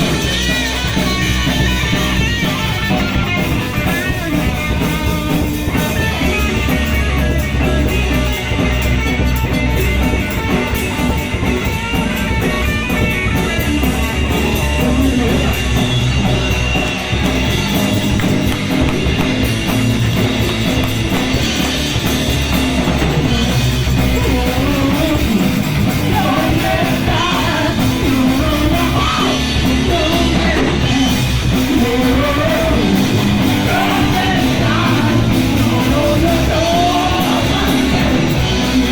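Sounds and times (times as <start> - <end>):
bass guitar: 0.0 - 38.9
distorted electric guitars: 0.0 - 38.9
drum kit: 0.0 - 38.9
shouted singing: 24.1 - 38.9.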